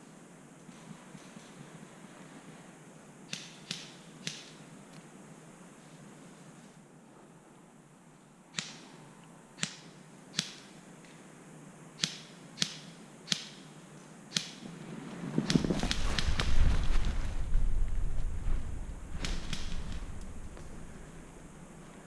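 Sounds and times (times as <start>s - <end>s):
airsoft gun cracks: 3.3s - 4.6s, 8.5s - 9.0s, 9.6s - 10.8s, 12.0s - 13.7s, 14.3s - 14.7s, 19.2s - 20.7s
low rumbling noise: 14.7s - 22.0s.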